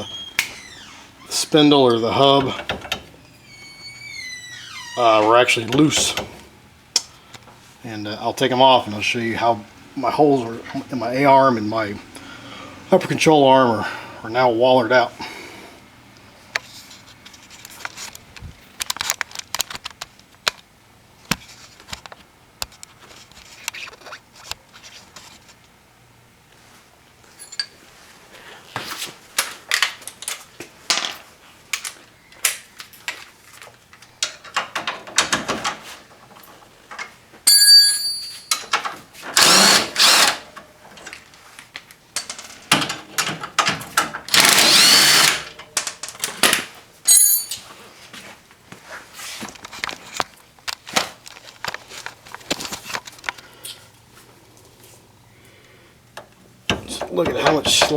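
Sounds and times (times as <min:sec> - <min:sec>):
metallic clinks of tools: 0:27.3 - 0:27.8, 0:37.5 - 0:38.7, 0:47.1 - 0:47.7
power tool bursts: 0:39.4 - 0:40.4, 0:44.3 - 0:45.5.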